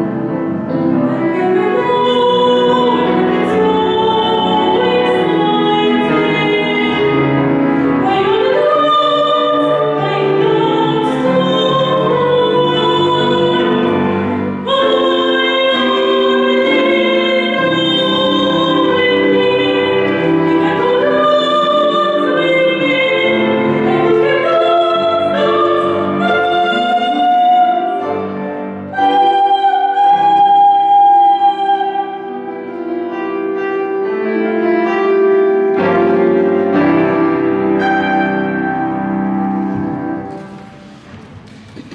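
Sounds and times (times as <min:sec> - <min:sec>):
instrumental accompaniment: 0:00.0 - 0:41.9
woman singing operatically: 0:01.2 - 0:07.2, 0:08.0 - 0:28.1, 0:29.0 - 0:32.4.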